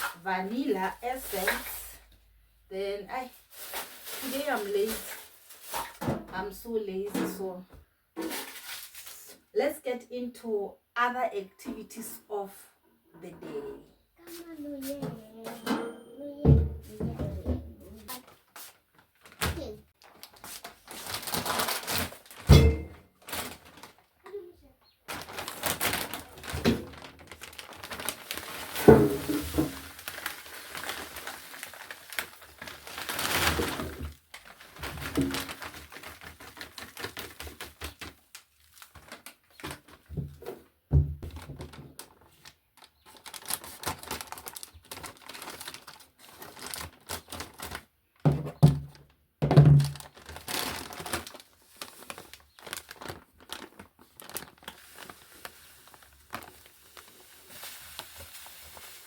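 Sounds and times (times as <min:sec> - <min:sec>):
packaging crinkling: 0:03.3 - 0:06.0, 0:18.1 - 0:24.2, 0:25.1 - 0:40.1, 0:41.2 - 0:47.9, 0:49.7 - 0:59.0
objects clattering and clicking: 0:25.1 - 0:38.2.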